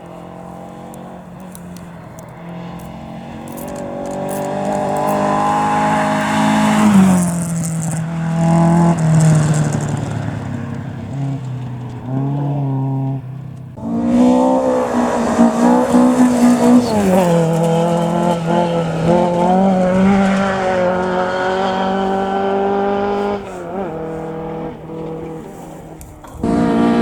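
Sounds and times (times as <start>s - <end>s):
rally car engine revving: 0.0s - 27.0s.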